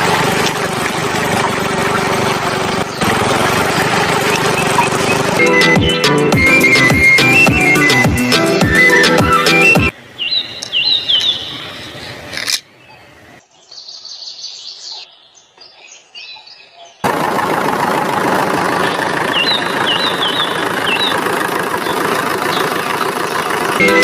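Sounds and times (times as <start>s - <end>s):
small birds chirping: 8.8s - 17.1s, 18.7s - 24.0s.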